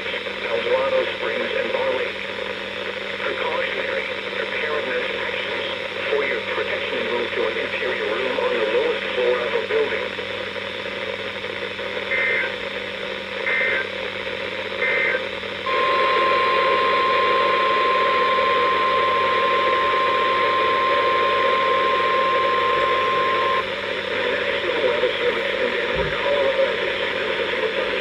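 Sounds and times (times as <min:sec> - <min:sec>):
radio static hiss: 0:00.0 - 0:28.0
steady alarm tone: 0:12.0 - 0:24.2
screeching data bursts: 0:14.8 - 0:23.6.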